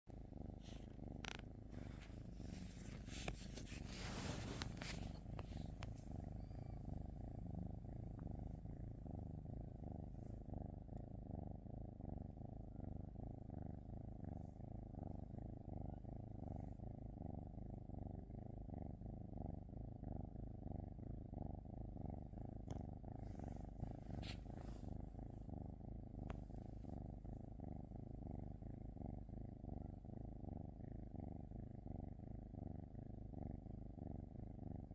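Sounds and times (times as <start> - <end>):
cat purring: 0.1 - 34.9
rustling: 0.5 - 9.2, 23.4 - 25.0.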